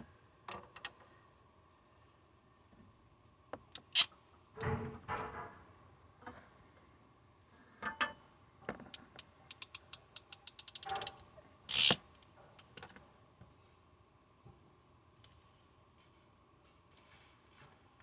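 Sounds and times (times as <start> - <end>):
ratcheting hand tool clicking: 8.9 - 12.0.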